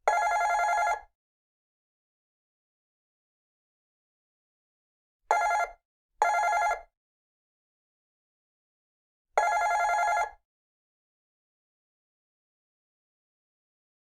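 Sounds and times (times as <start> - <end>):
telephone ringing: 0.1 - 1.1, 5.3 - 6.9, 9.4 - 10.4.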